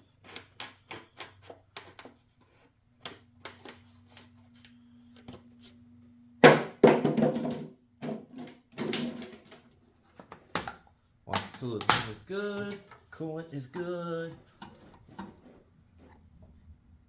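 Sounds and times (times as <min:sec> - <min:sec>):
handling clicks and knocks: 0:07.4 - 0:16.2.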